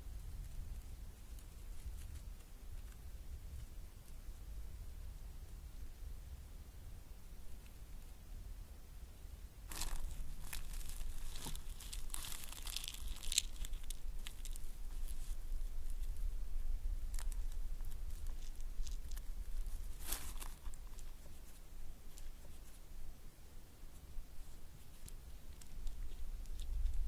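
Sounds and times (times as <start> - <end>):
rustling and crackling: 0.0 - 4.5, 9.6 - 27.0
steady low rumble: 0.0 - 27.0.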